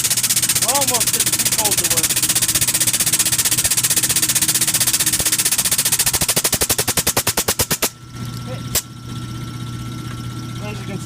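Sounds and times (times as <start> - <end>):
power hammer striking steel: 4.1 - 7.9.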